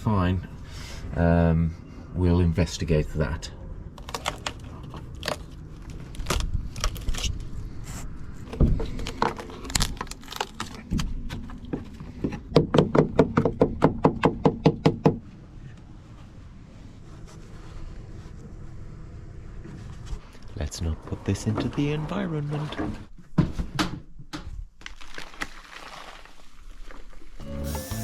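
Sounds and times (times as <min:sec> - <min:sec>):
hand tools knocking on wood: 0:12.2 - 0:15.2.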